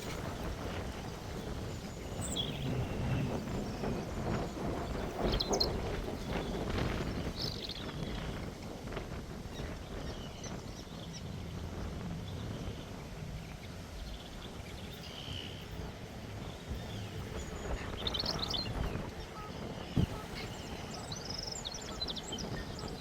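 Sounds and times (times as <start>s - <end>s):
bird chirps: 1.7s - 4.4s, 16.5s - 23.0s.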